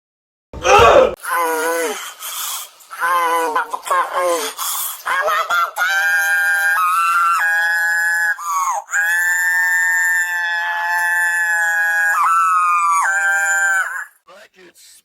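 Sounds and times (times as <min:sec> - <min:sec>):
high howl-like wail: 0:05.8 - 0:14.1.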